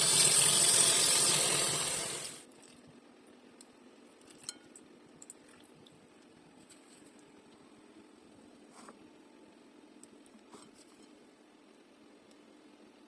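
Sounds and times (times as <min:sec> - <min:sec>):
water running from tap: 0:00.0 - 0:02.4.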